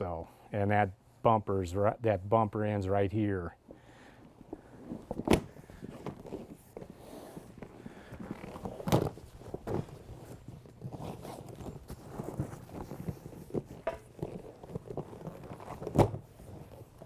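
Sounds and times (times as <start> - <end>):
canoe skin rustling and scraping: 4.4 - 17.0.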